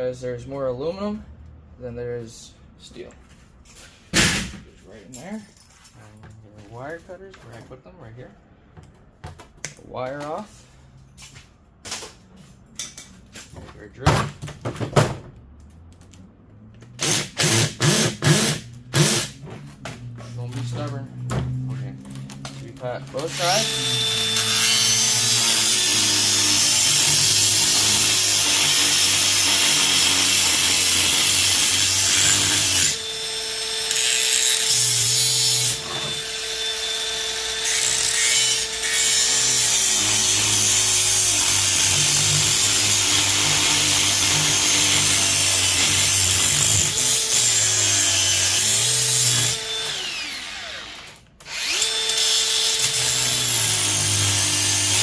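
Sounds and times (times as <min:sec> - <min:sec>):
angle grinder cutting metal: 0:22.9 - 0:55.0.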